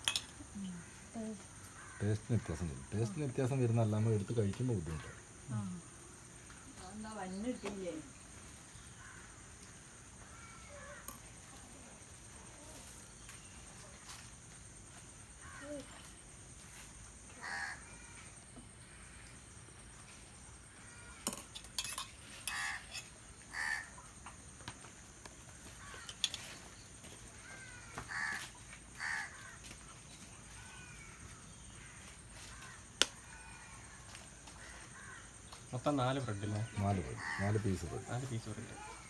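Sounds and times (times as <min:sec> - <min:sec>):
birds calling: 0:20.7 - 0:24.5, 0:25.5 - 0:39.0.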